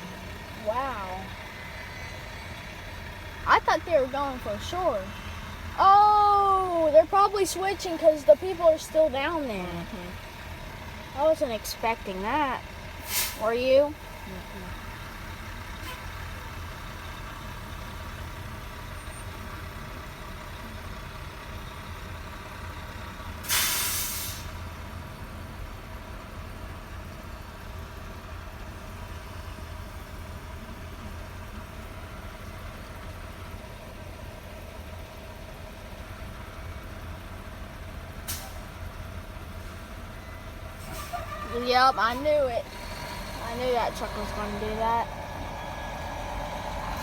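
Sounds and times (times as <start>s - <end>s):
diesel vehicle idling: 0.0s - 47.0s
air brake hiss: 13.0s - 13.5s, 23.4s - 24.6s, 38.3s - 38.7s.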